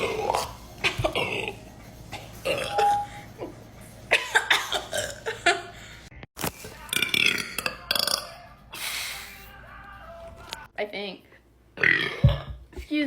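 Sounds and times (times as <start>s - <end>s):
person burping: 2.4s - 3.0s, 4.8s - 5.3s, 6.9s - 8.4s, 11.8s - 12.6s.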